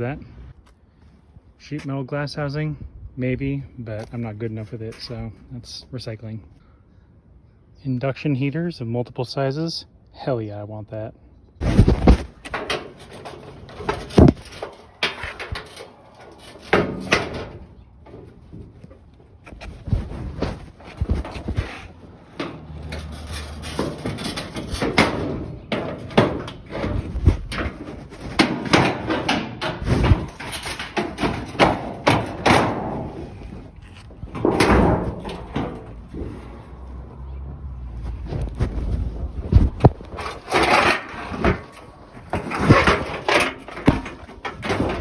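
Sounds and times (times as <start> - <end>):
sheet metal clanking and rattling: 11.6 - 37.4, 39.6 - 45.0.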